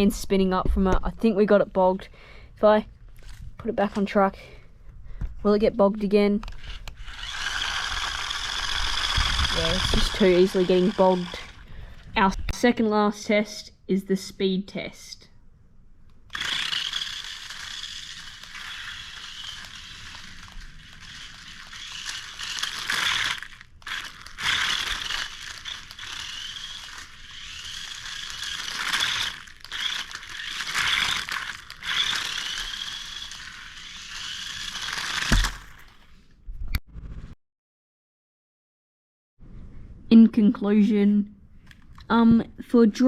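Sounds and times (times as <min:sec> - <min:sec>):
toy car motor whining: 0:06.4 - 0:11.7, 0:16.3 - 0:36.1.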